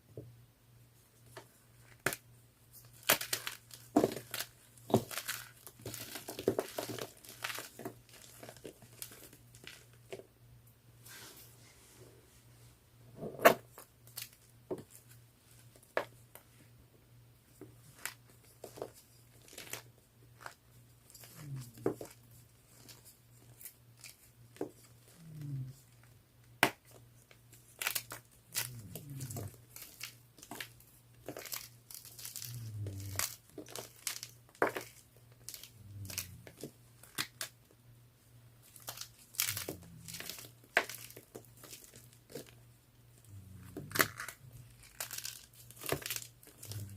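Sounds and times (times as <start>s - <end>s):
chalk crunching and crumbling: 2.8s - 9.9s, 26.8s - 37.5s, 38.6s - 46.9s.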